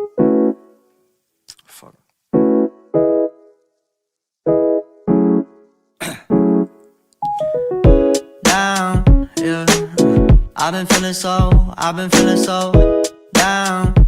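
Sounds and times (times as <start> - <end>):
electric piano chords: 0.0 - 0.9, 2.3 - 3.6, 4.5 - 5.7, 6.3 - 10.7
melody with low beat: 7.2 - 8.3.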